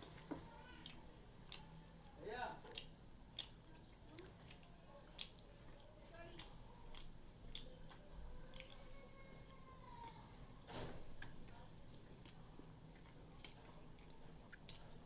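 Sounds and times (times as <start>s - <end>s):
person chewing food: 0.8s - 9.1s, 11.2s - 15.0s.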